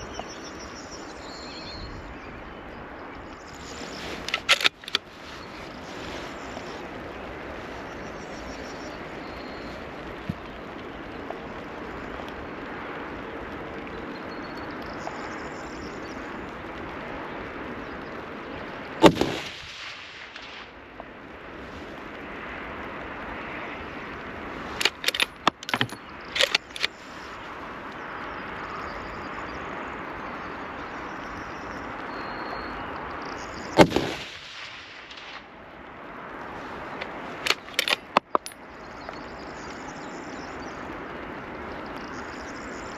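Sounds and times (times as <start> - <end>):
rain hissing: 0.0 - 42.9
rifle bolt metallic clicks: 4.2 - 5.0, 24.8 - 27.0, 37.0 - 38.6
rifle shot: 19.0 - 20.6, 33.8 - 35.4.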